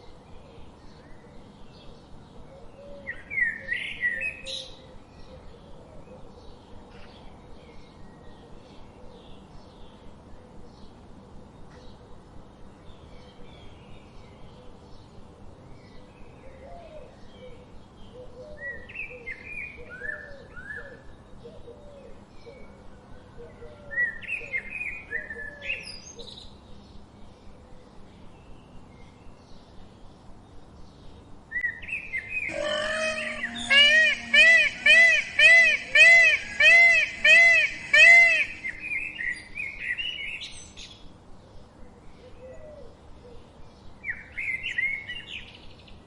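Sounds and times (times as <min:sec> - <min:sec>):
birds chirping downward notes: 0:32.2 - 0:39.9.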